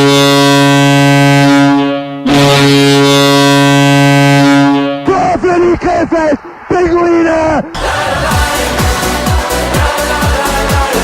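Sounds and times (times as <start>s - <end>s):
goal horn blasts: 0.0s - 5.1s.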